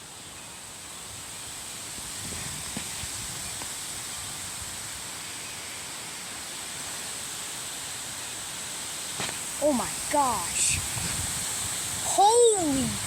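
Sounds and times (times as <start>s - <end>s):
leaves rustling: 0.0s - 13.0s
wind blowing through trees: 0.0s - 13.0s.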